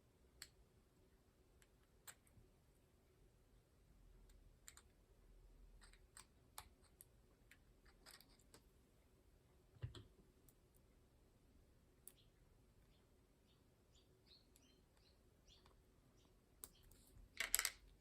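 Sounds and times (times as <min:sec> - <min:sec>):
small metal clicks and taps: 0:04.2 - 0:05.0, 0:05.8 - 0:08.7, 0:16.6 - 0:18.0.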